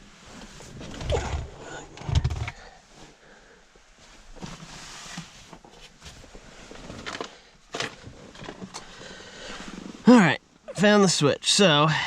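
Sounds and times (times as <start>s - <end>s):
faint rustling: 0.0s - 10.2s.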